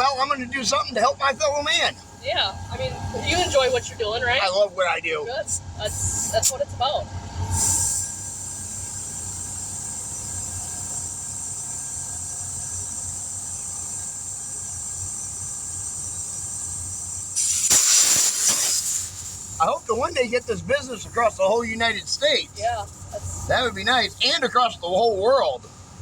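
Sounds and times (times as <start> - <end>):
compressed air hissing: 0.0 - 4.4, 5.5 - 6.6, 7.4 - 26.0
rough rush of air: 7.2 - 9.6, 17.4 - 19.6.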